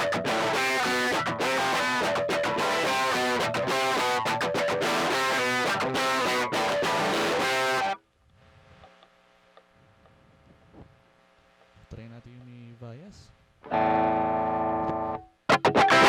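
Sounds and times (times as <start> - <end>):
distorted electric guitar: 0.0 - 8.0, 13.7 - 16.0
faint amplifier hum: 0.0 - 16.0.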